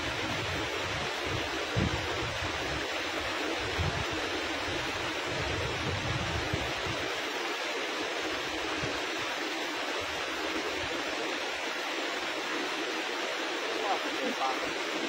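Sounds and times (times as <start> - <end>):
river water rushing: 0.0 - 15.0.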